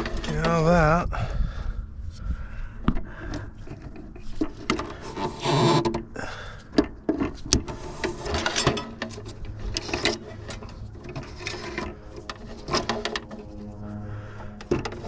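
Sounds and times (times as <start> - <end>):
metallic clicks knocks and scrapes: 6.8 - 13.6
faint low hum: 7.5 - 15.0.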